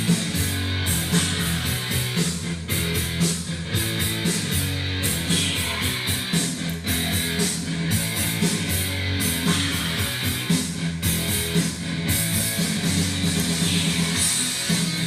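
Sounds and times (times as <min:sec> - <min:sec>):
rock music with electric guitar: 0:00.0 - 0:15.0.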